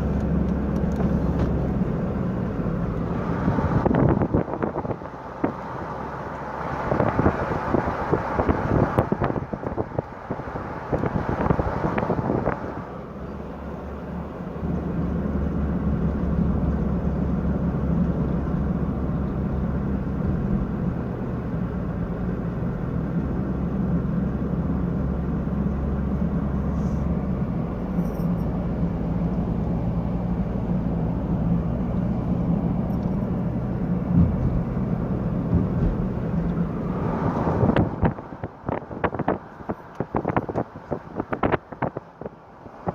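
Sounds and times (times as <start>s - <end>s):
vehicle engine droning: 0.0s - 42.9s.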